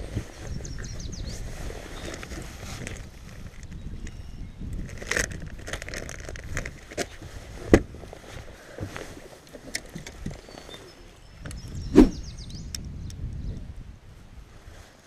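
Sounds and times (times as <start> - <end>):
wind rumble on microphone: 0.0 - 15.0
fishing gear clicks and knocks: 4.8 - 10.8.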